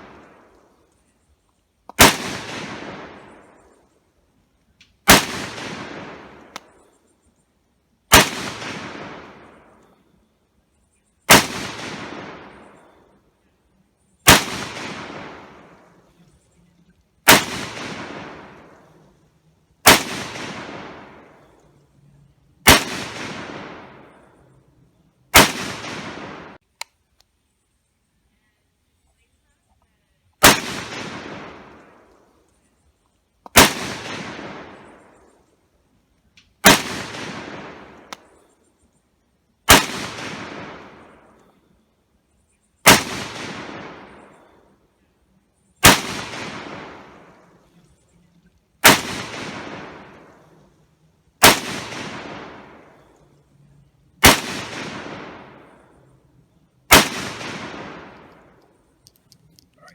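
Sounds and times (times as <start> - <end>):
rifle shots: 1.9 - 3.7, 5.0 - 6.9, 8.1 - 9.9, 11.3 - 13.1, 14.2 - 16.3, 17.2 - 21.8, 22.6 - 24.6, 25.3 - 26.6, 30.4 - 32.3, 33.5 - 35.3, 36.6 - 38.4, 39.7 - 41.5, 42.8 - 44.8, 45.8 - 47.9, 48.8 - 53.5, 54.2 - 59.0
rolling gunshot echo: 2.0 - 3.6, 5.1 - 6.8, 8.1 - 10.0, 11.3 - 13.0, 14.2 - 16.2, 17.3 - 19.1, 19.8 - 21.6, 22.6 - 24.4, 25.3 - 26.6, 30.4 - 32.1, 36.6 - 38.3, 39.7 - 41.4, 42.9 - 44.6, 45.8 - 47.7, 48.8 - 50.7, 51.4 - 53.4, 54.2 - 56.2, 56.9 - 58.7.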